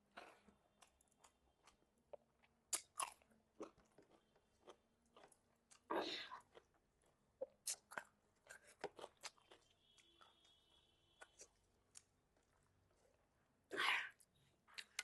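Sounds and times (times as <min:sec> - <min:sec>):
chewing: 0:00.2 - 0:10.6.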